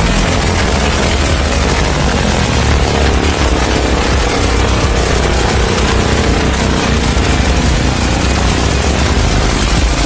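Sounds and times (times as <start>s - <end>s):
music with heavy bass: 0.0s - 10.0s.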